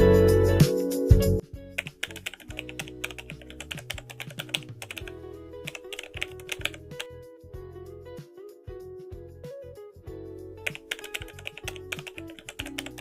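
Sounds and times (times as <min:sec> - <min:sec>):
background music: 0:00.0 - 0:13.0
rapid irregular clicks: 0:01.8 - 0:05.1, 0:05.7 - 0:07.1, 0:10.6 - 0:13.0.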